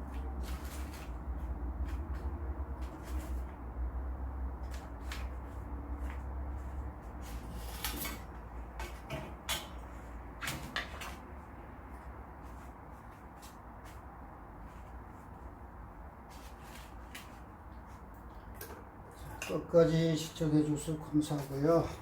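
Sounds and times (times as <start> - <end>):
objects knocking and rustling: 6.0 - 11.4.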